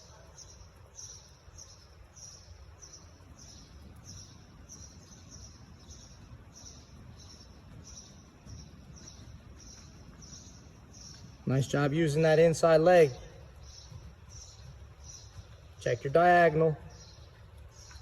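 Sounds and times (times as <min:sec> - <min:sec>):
low outdoor rumble: 0:00.0 - 0:18.0.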